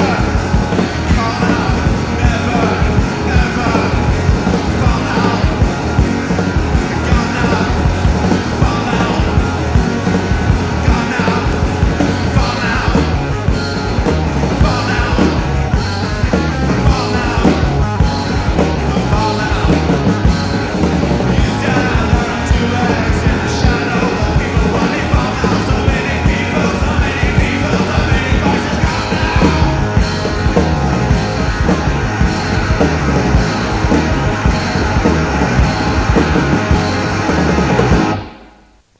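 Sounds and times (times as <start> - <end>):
driving drum beat: 0.0 - 38.5
full-band rock music: 0.0 - 38.6.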